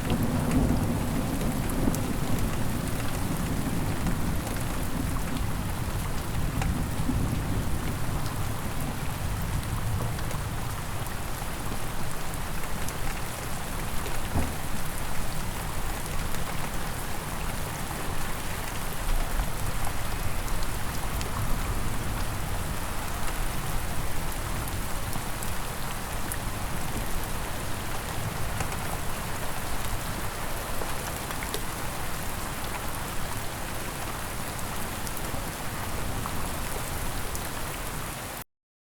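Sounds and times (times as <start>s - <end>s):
steady rain falling: 0.0s - 38.4s
low rumble of thunder: 0.1s - 11.2s.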